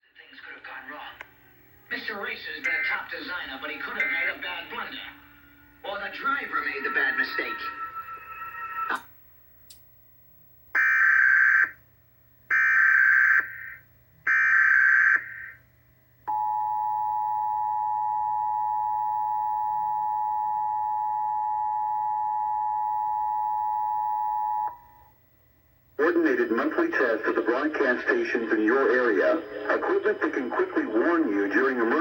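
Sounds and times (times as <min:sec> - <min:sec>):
two-tone attention signal: 0:03.8 - 0:05.1.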